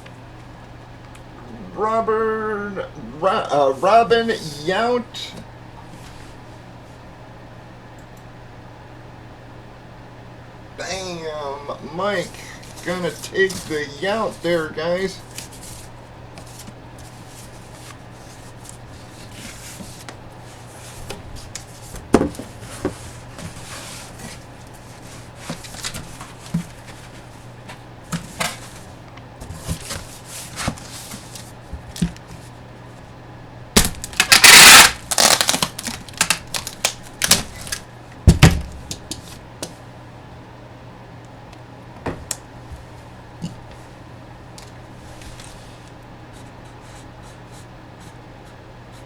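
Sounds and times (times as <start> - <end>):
faint low hum: 0.0 - 8.3, 10.3 - 39.2
packaging crinkling: 33.8 - 37.9.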